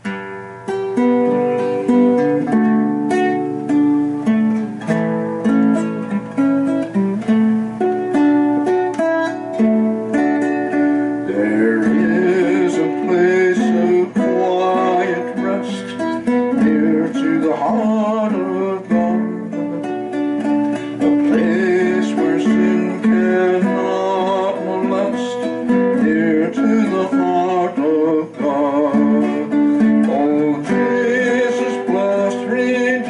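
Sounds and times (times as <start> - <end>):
strummed acoustic guitar: 0.0 - 33.0
person singing: 9.0 - 33.0.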